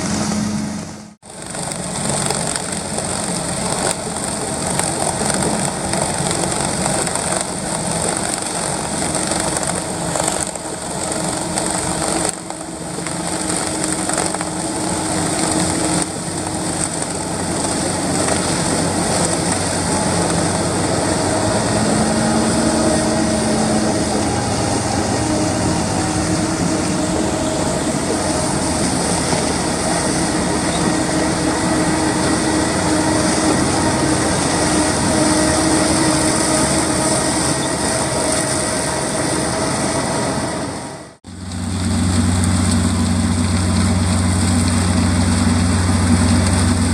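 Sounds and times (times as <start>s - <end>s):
farm machinery engines running: 0.0s - 46.9s.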